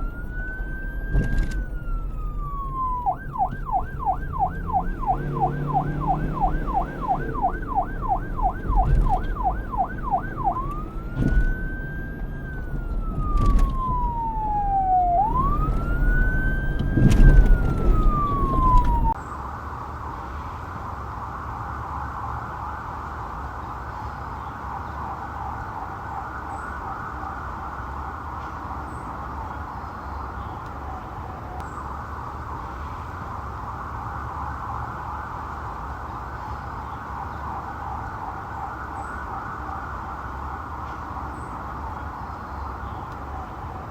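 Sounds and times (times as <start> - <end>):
police siren: 0.0 - 19.2, 21.4 - 31.4, 32.0 - 43.9
engine rumble: 0.0 - 19.3.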